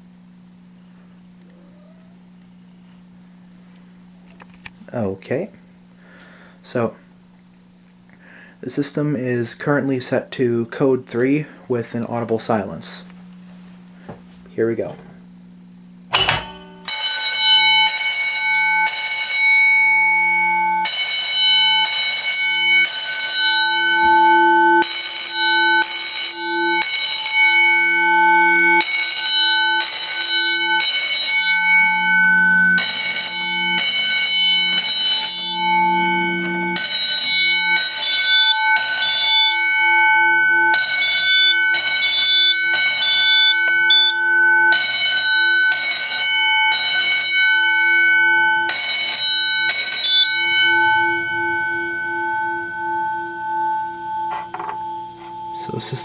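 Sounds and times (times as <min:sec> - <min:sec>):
fire alarm bell ringing: 0:16.1 - 0:56.0.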